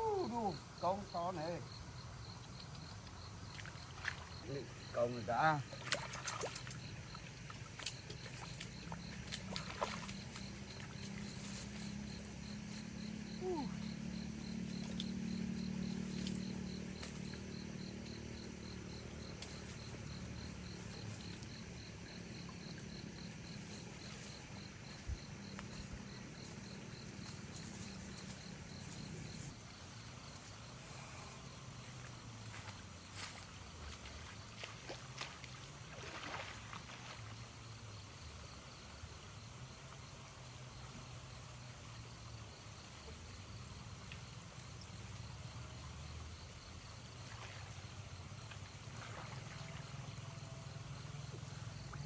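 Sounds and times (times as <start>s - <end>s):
insect chirping rapidly: 0.0s - 30.3s.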